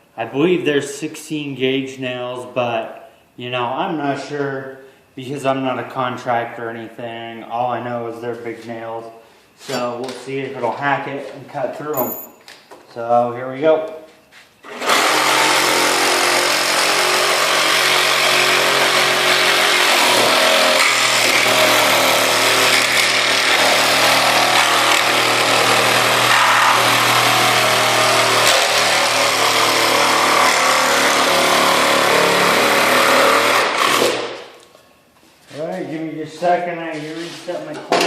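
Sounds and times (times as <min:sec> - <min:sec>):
reciprocating saw cutting wood: 0:14.6 - 0:34.4.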